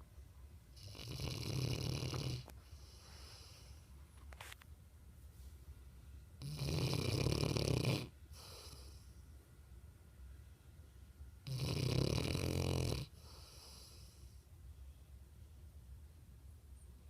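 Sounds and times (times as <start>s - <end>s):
dog snoring: 0.8s - 3.7s, 6.4s - 9.0s, 11.4s - 14.3s
dog breathing softly: 2.5s - 4.0s.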